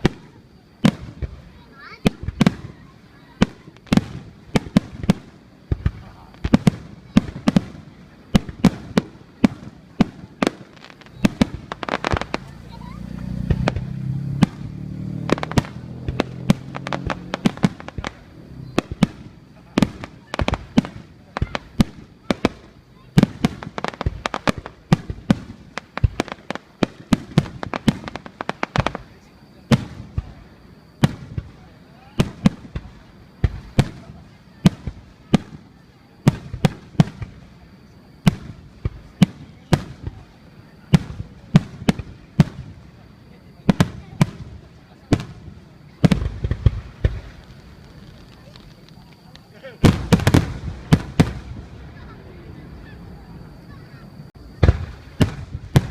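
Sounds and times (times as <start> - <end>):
fireworks bangs: 0.0 - 55.9.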